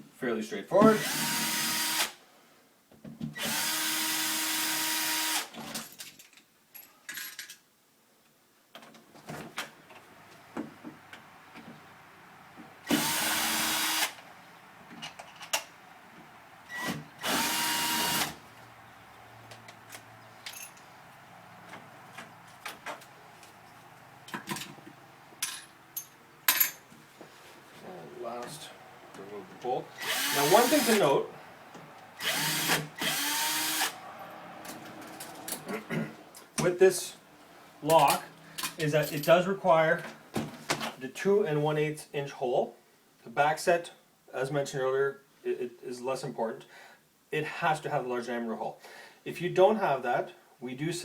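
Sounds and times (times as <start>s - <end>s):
power drill running: 1.0s - 2.1s, 3.4s - 5.5s, 12.8s - 14.2s, 16.7s - 18.4s, 30.0s - 31.1s, 32.2s - 34.0s.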